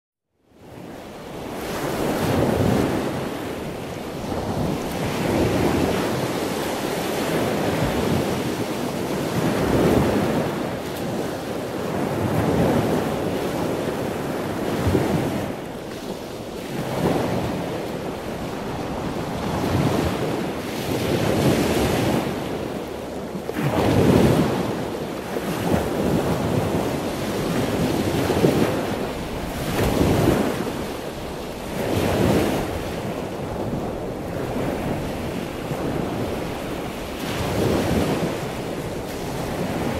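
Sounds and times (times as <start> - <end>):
wind noise on microphone: 0.5 - 39.9
waves breaking: 0.7 - 39.9.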